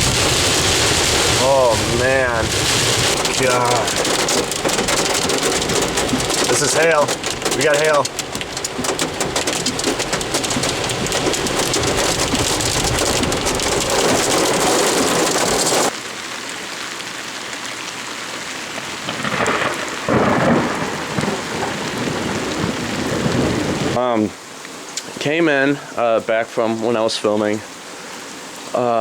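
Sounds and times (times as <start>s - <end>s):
hail and rain pelting a car: 0.0s - 16.0s, 18.6s - 24.0s.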